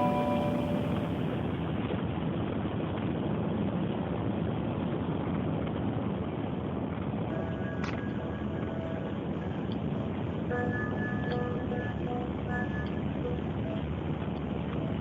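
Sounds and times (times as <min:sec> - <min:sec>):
music held notes: 0:00.0 - 0:01.4, 0:07.3 - 0:15.0.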